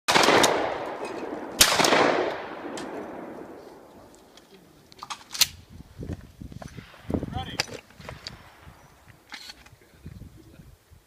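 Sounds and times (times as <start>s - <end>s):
shotgun shots echoing: 0.1s - 3.9s.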